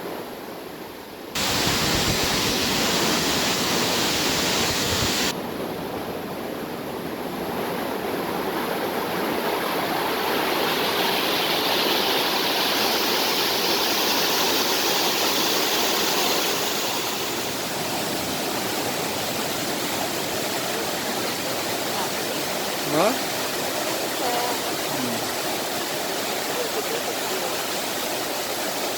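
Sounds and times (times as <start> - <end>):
stream rushing over rocks: 1.4 - 5.4, 7.5 - 28.9.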